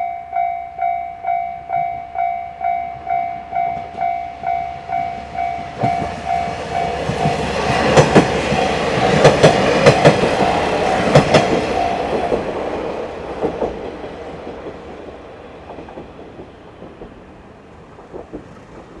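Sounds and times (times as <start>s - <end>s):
level-crossing bell ringing: 0.0s - 7.6s
train wheels clacking over rail joints: 5.3s - 19.0s.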